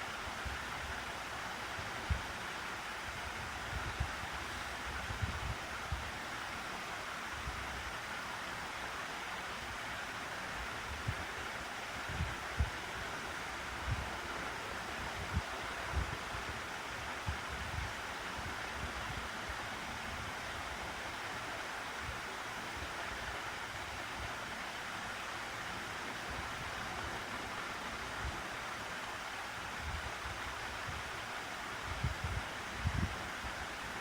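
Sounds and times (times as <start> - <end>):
room fan whooshing: 0.0 - 34.0
wind buffeting microphone: 31.9 - 33.6.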